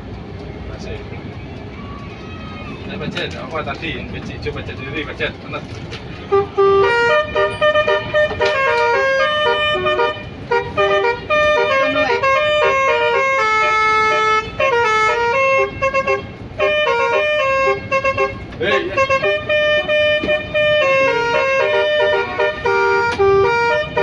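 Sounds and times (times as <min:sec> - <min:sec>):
bus horn playing a tune: 0:05.9 - 0:24.0.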